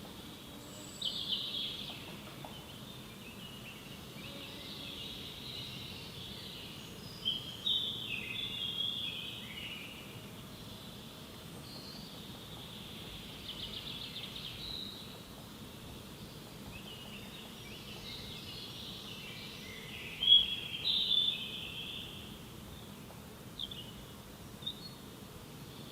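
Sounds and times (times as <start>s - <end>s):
faint background hiss: 0.0s - 25.9s
birds chirping and trilling: 23.6s - 25.1s.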